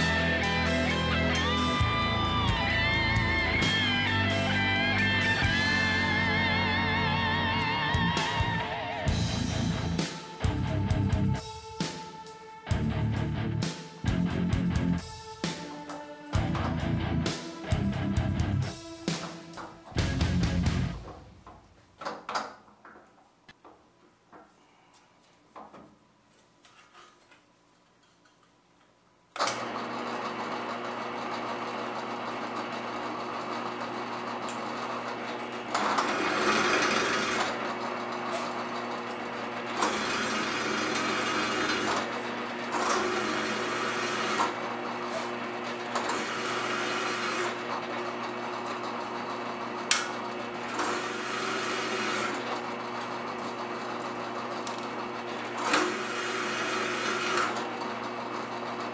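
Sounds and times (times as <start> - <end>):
power drill cutting steel: 29.4 - 53.1, 55.0 - 58.9.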